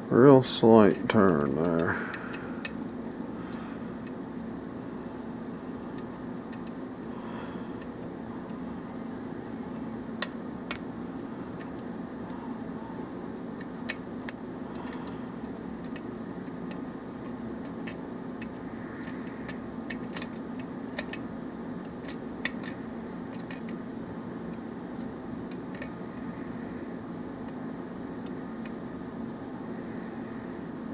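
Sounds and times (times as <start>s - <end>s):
background hum: 0.0s - 30.9s
lock picking metallic clicks: 0.8s - 4.2s, 5.9s - 6.8s, 7.7s - 8.6s, 9.7s - 10.9s, 11.5s - 12.4s, 13.5s - 26.3s.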